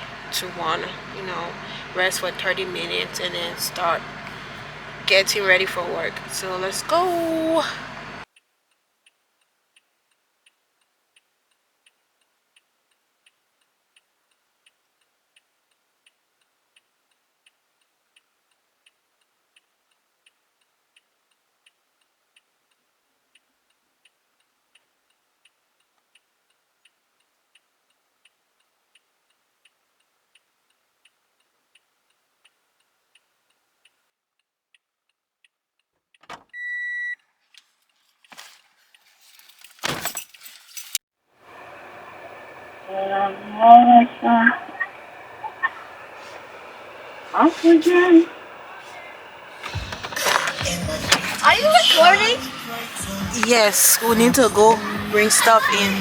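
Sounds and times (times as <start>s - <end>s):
turn signal ticking: 0.0s - 37.2s, 41.5s - 56.0s
high-pitched beep: 36.6s - 37.2s.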